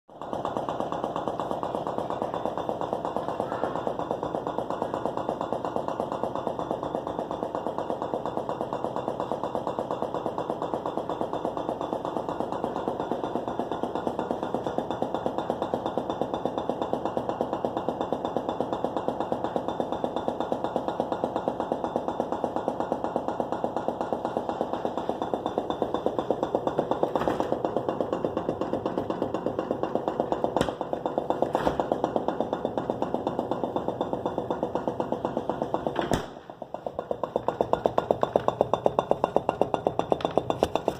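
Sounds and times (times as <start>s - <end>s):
refrigerator knocking: 23.4s - 40.9s.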